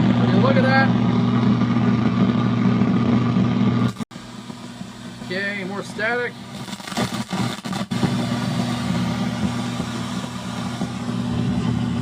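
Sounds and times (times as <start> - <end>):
static hiss from speaker: 3.8 - 12.0.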